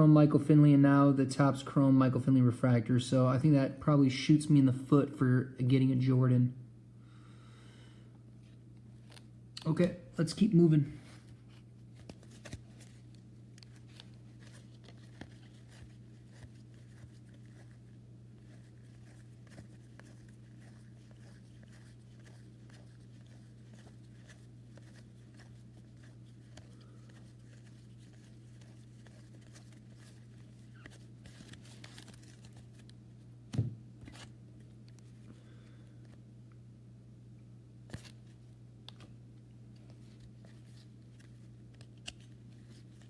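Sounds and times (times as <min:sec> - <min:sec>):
steady low hum: 0:00.0 - 0:43.0
cards and wrappers rustling: 0:08.9 - 0:33.0, 0:37.9 - 0:39.1, 0:39.8 - 0:43.0
cards clicking: 0:41.2 - 0:42.7.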